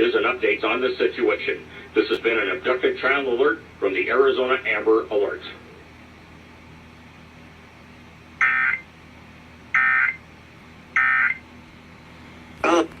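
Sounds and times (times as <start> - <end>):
warbling digital data tones: 8.4 - 8.8, 9.8 - 10.2, 11.0 - 11.4.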